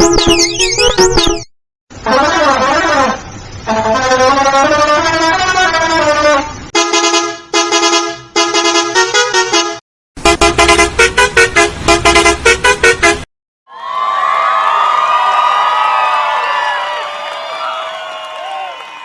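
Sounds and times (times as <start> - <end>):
musical bus horn: 1.9 - 13.3
crowd cheering: 13.7 - 19.0.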